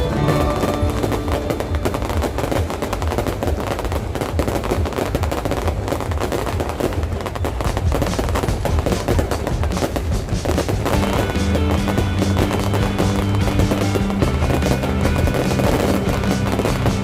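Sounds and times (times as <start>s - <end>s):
fireworks crackling and banging: 0.0s - 17.0s.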